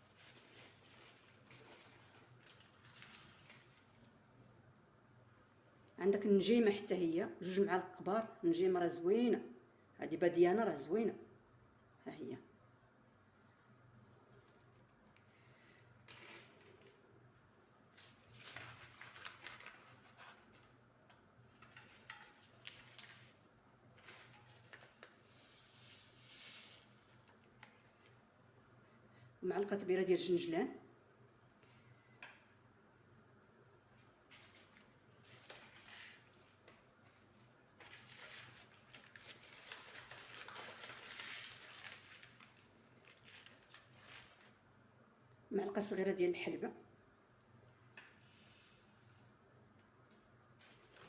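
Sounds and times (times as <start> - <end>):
dry herbs rustling: 0.0 - 4.2, 34.2 - 44.6
dry seeds rustling and clicking: 14.2 - 15.3.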